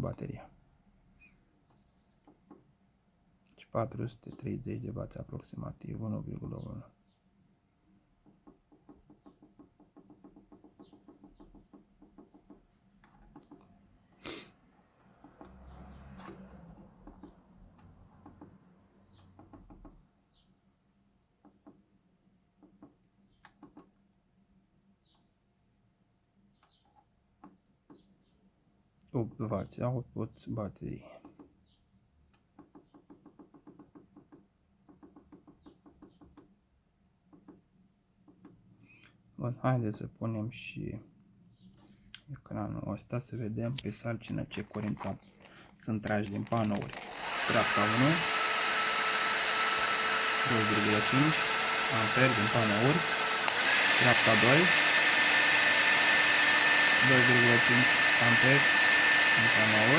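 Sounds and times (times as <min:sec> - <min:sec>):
rapid clicking: 0:46.5 - 0:59.9.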